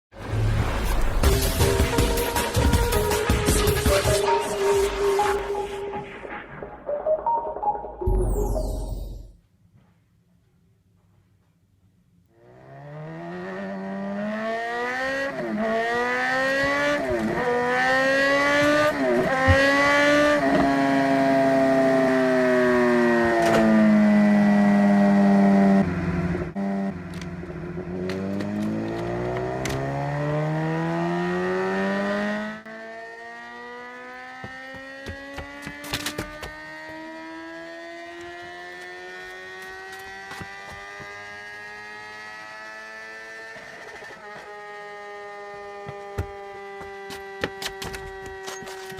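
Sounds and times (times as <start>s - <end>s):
engine revving: 12.3s - 48.6s.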